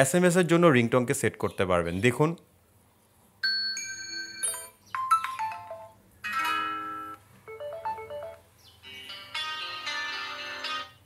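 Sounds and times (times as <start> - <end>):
melodic notification chimes: 3.5 - 8.4.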